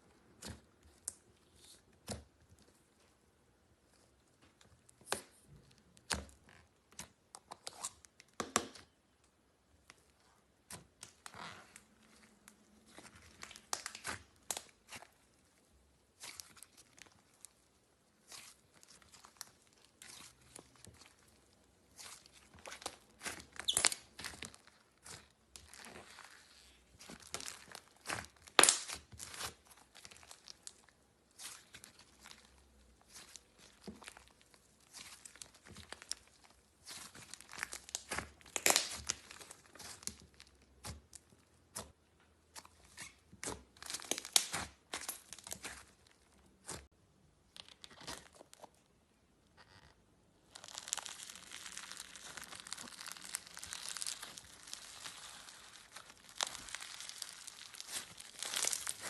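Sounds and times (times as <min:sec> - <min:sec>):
slime crackling and popping: 0:10.6 - 0:46.9, 0:50.4 - 0:59.0.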